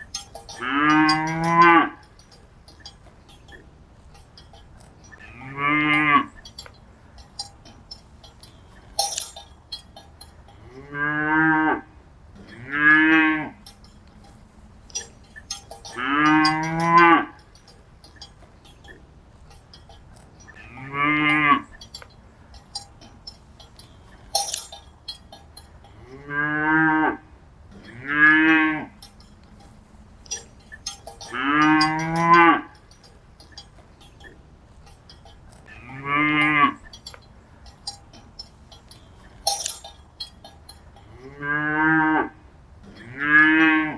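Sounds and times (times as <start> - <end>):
light clicks and clinks: 0.0 - 11.3, 12.2 - 26.6, 27.6 - 41.8
cattle mooing: 0.2 - 2.1, 5.1 - 6.6, 10.5 - 14.3, 14.9 - 17.4, 20.5 - 21.9, 25.8 - 29.7, 30.3 - 32.8, 35.7 - 37.1, 41.0 - 43.9.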